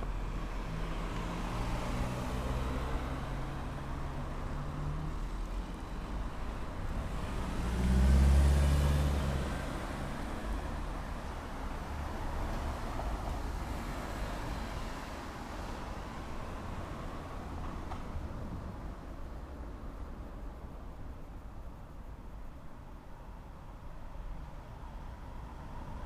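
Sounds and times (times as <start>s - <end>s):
vehicle passing close: 0.0s - 5.2s, 7.1s - 10.5s
traffic engine rumble: 0.0s - 26.0s.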